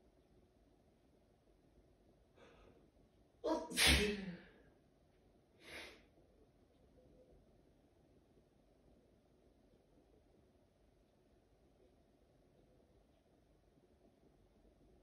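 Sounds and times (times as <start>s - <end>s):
breathing: 2.3s - 2.9s, 5.6s - 6.1s
person sneezing: 3.5s - 4.5s.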